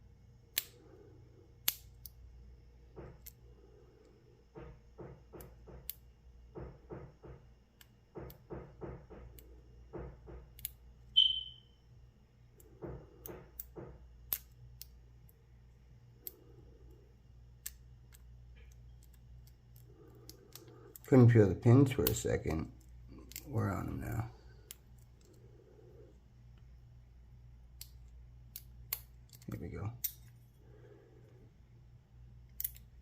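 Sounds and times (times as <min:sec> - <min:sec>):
high metallic ping: 0:11.2 - 0:11.7.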